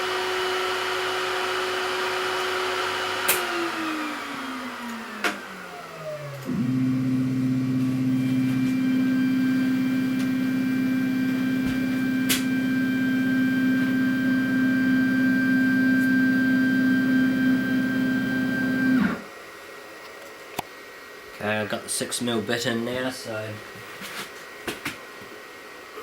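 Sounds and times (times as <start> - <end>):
electric motor humming: 0.0 - 19.3.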